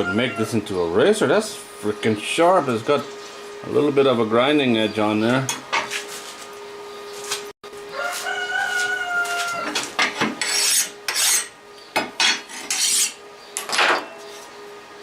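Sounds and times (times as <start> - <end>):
rooster crowing: 0.0 - 0.6, 7.8 - 10.0.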